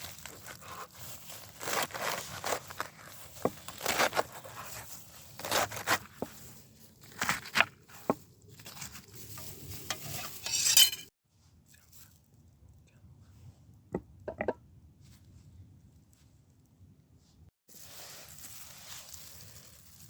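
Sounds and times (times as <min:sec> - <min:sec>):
utensils scraping and rustling: 0:08.6 - 0:11.1.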